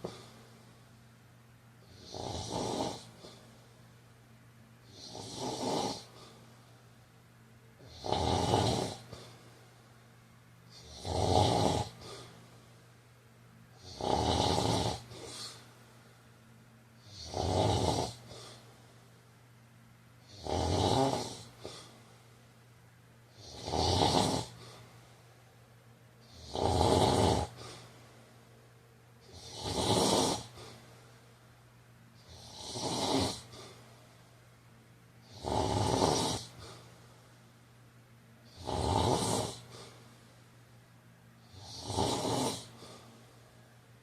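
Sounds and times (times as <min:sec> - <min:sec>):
man snoring: 0:01.8 - 0:03.4, 0:04.8 - 0:06.4, 0:07.8 - 0:09.4, 0:10.7 - 0:12.3, 0:13.8 - 0:15.6, 0:17.0 - 0:18.6, 0:20.2 - 0:21.9, 0:23.3 - 0:24.8, 0:26.2 - 0:27.8, 0:29.2 - 0:30.8, 0:32.2 - 0:33.8, 0:35.2 - 0:36.8, 0:38.4 - 0:39.7, 0:41.4 - 0:43.0.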